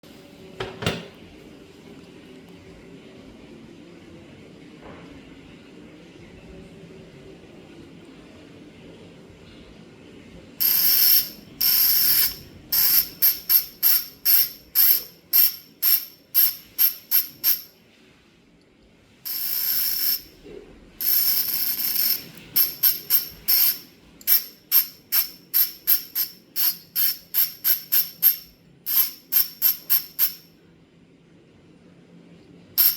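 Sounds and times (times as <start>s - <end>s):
bicycle freehub ratcheting buzz: 10.6s - 17.8s, 19.3s - 20.4s, 21.0s - 30.5s.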